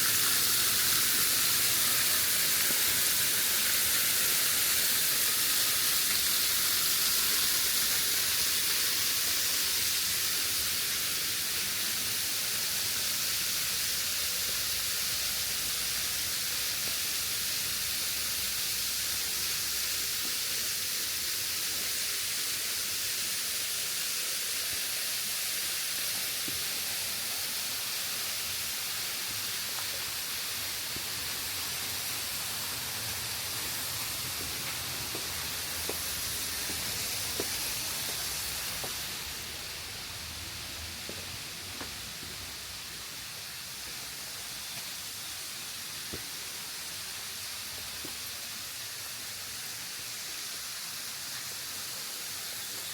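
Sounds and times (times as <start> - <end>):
waterfall rushing: 0.0 - 12.6, 26.4 - 41.6.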